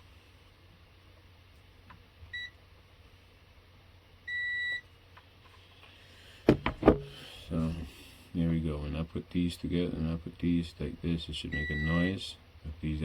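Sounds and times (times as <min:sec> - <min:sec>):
continuity tester beeping: 0:04.3 - 0:04.8, 0:11.5 - 0:12.2
sharp knocks: 0:06.5 - 0:07.2.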